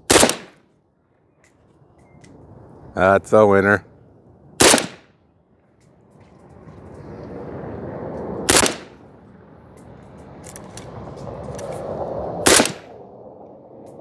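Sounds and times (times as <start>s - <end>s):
rifle shots with echo: 0.0s - 0.6s, 4.6s - 5.1s, 8.5s - 9.0s, 12.4s - 13.0s.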